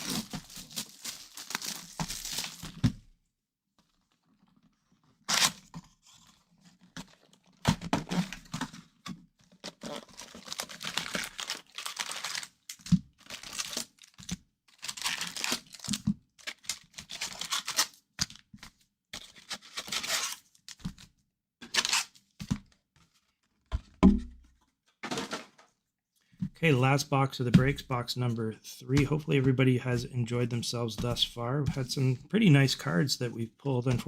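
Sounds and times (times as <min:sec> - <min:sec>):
plastic wrapping tearing and crumpling: 0:00.0 - 0:02.8, 0:05.2 - 0:05.6, 0:09.5 - 0:18.0, 0:19.4 - 0:20.4, 0:21.6 - 0:22.2
knock: 0:24.0 - 0:24.4.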